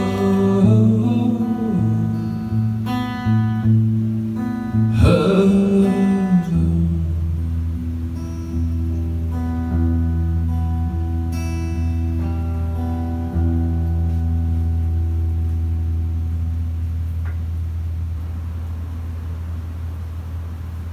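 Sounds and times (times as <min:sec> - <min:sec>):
acoustic guitar chords: 0:00.0 - 0:20.9.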